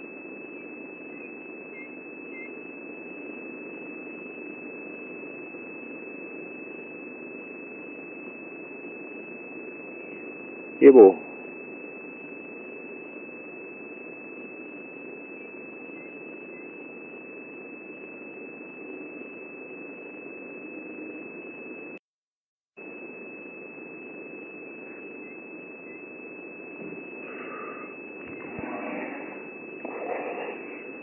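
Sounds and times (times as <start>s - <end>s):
high-pitched electronic whine: 0.0s - 22.0s, 22.8s - 31.0s
faint chirps: 24.7s - 31.0s.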